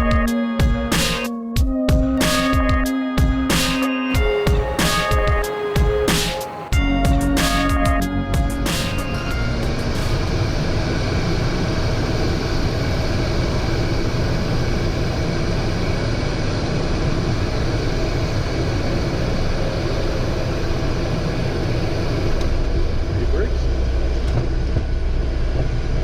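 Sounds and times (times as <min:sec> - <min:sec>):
faint steady tones: 0:00.0 - 0:10.4
jet engines rushing: 0:00.0 - 0:26.0.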